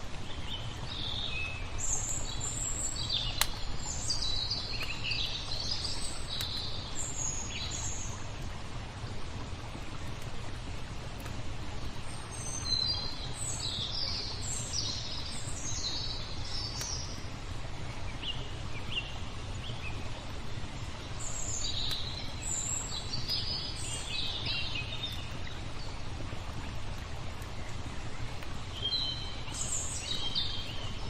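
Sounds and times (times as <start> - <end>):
flowing water rushing: 0.0 - 31.0
songbirds chirping: 0.0 - 31.0
fire crackling pops: 1.8 - 17.7, 21.2 - 28.8.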